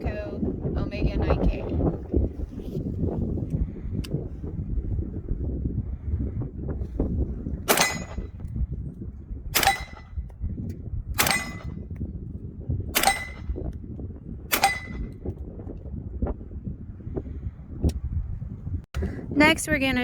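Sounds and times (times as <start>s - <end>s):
short metallic ring: 7.7s - 8.3s, 9.6s - 10.1s, 11.2s - 11.8s, 13.0s - 13.5s, 14.5s - 15.1s
suppressed rifle shots: 7.7s - 8.4s, 9.6s - 10.2s, 11.2s - 11.8s, 13.0s - 13.7s, 14.5s - 15.2s.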